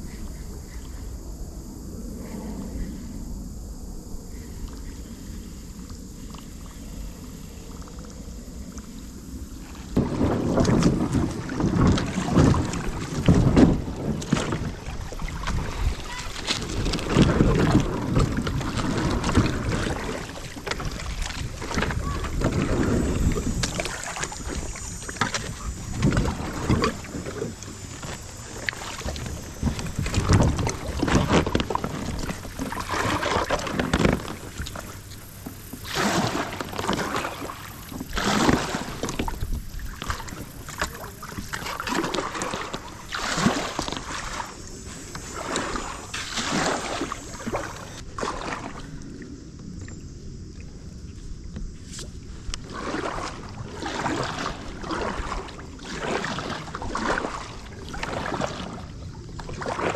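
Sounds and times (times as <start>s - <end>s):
moving water: 0.0s - 59.9s
paddle splashing in water: 9.6s - 49.4s, 51.8s - 59.9s.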